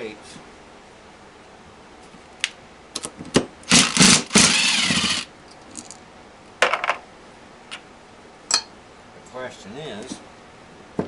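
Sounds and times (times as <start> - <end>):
power tool motor bursts: 3.7 - 5.3.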